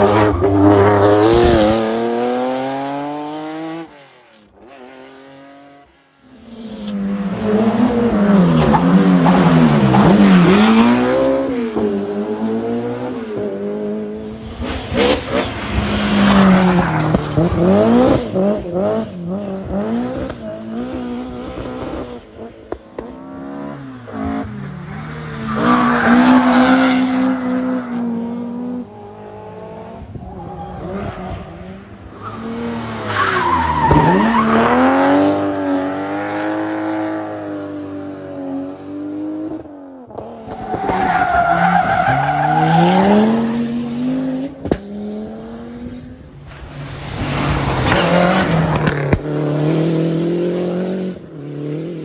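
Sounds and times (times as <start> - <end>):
rally cars revving past: 0.0 - 52.0.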